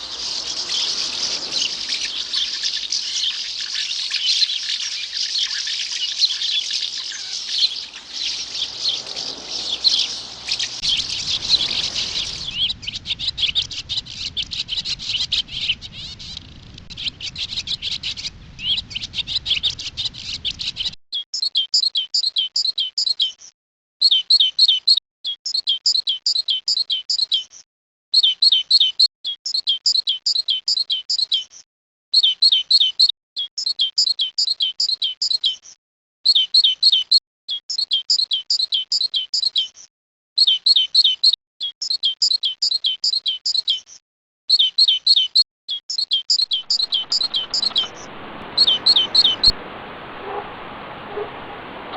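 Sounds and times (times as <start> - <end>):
bird trilling high phrase: 0.0 - 12.9, 46.5 - 51.9
songbirds chirping: 0.0 - 20.8, 46.4 - 51.9.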